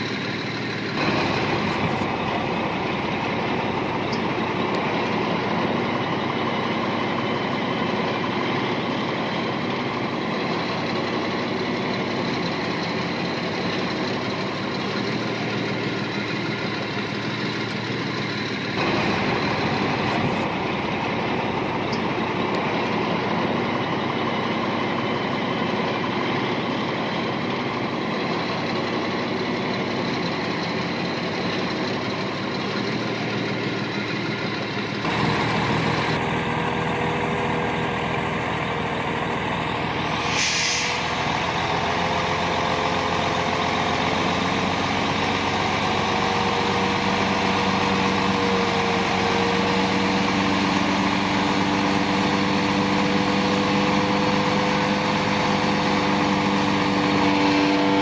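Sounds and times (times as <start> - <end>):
heavy diesel engine running: 0.0 - 58.0.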